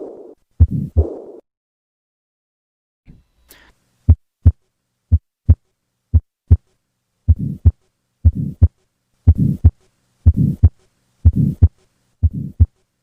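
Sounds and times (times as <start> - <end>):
harsh heart murmur: 0.0 - 1.4, 7.3 - 8.7, 9.3 - 12.7
heartbeat through stethoscope: 0.0 - 1.4, 4.1 - 5.6, 7.3 - 12.7.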